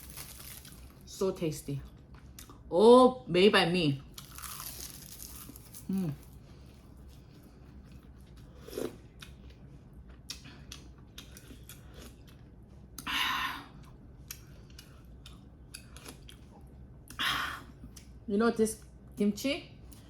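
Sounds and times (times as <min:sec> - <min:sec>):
crisp crunching: 0:00.0 - 0:01.1, 0:04.1 - 0:06.4
chewing: 0:13.8 - 0:17.2.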